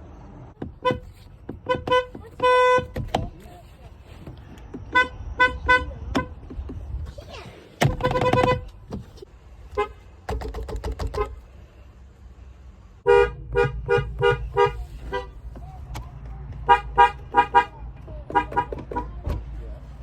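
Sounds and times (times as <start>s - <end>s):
car horns honking: 0.6s - 3.2s, 4.8s - 6.5s, 7.8s - 9.0s, 9.7s - 11.5s, 13.0s - 19.6s.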